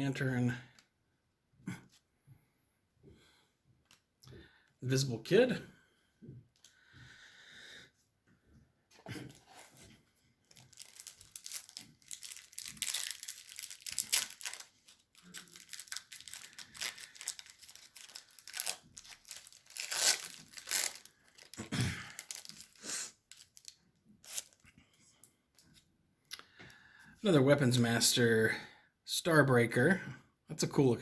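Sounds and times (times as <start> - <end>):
wrapper crackling and rustling: 10.4 - 24.6.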